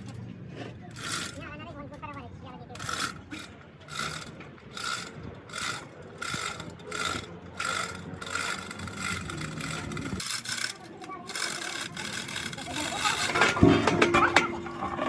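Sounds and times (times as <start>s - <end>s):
hand tool scraping metal: 0.5s - 1.4s, 2.8s - 15.0s.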